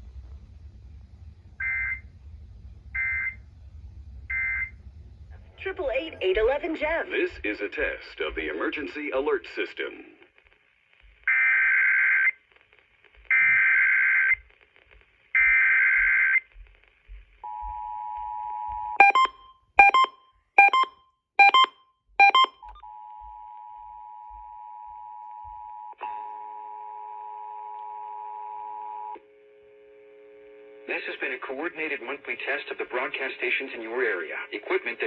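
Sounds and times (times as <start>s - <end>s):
lower steady tones: 0.0s - 6.5s
two-tone attention signal: 19.0s - 22.6s
short beeps: 19.0s - 22.8s.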